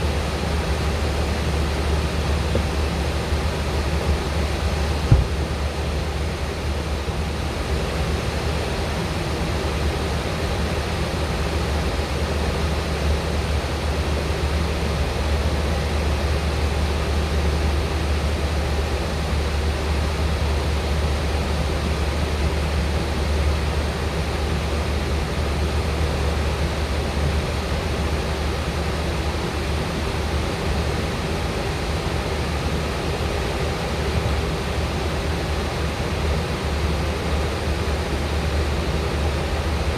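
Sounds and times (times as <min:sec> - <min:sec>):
engine and airflow rush: 0:00.0 - 0:06.8.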